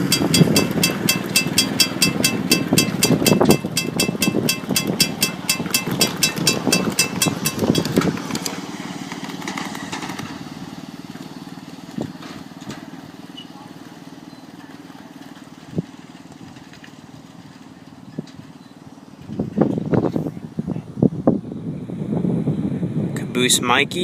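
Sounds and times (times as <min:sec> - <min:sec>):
miniature train engine clicking: 0:00.0 - 0:08.6.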